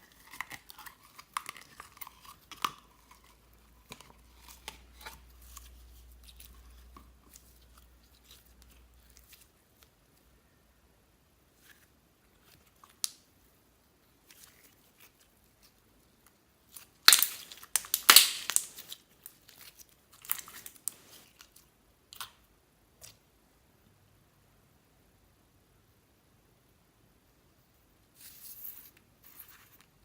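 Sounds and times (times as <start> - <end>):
slime crackling and crinkling: 0.0 - 10.0, 14.2 - 22.3.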